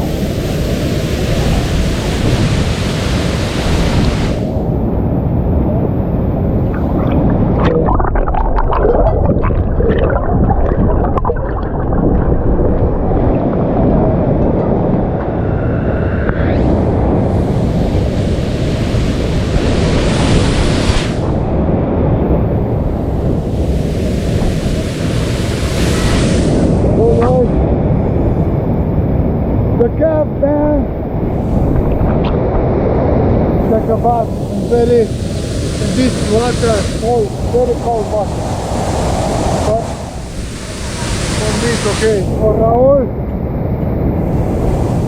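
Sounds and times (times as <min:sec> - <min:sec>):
waterfall rushing: 0:00.0 - 0:04.6, 0:16.6 - 0:21.4, 0:22.6 - 0:27.5, 0:33.5 - 0:42.7, 0:44.2 - 0:45.0
water splashing and gurgling: 0:06.6 - 0:15.5, 0:33.5 - 0:42.5.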